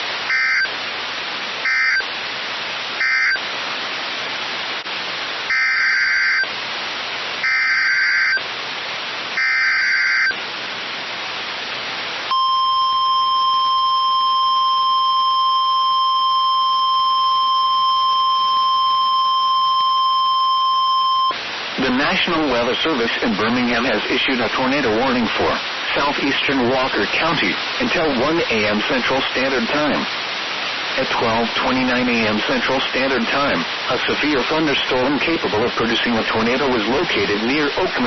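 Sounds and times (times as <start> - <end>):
radio static hiss: 0.0 - 38.0
piercing warning alarm tone: 0.3 - 0.7, 1.6 - 2.1, 3.0 - 3.4, 5.5 - 6.5, 7.4 - 8.4, 9.4 - 10.4, 12.3 - 21.4
screechy digital data blasts: 0.3 - 0.7, 1.6 - 2.0, 3.0 - 3.4, 5.5 - 6.5, 7.4 - 8.4, 9.4 - 10.4.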